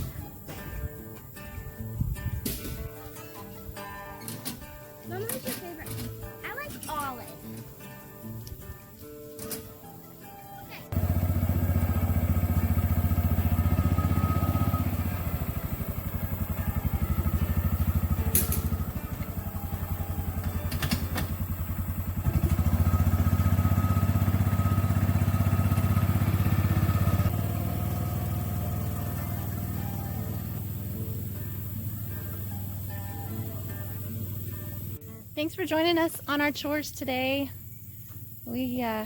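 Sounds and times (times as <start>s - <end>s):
motor engine running: 10.7s - 36.3s.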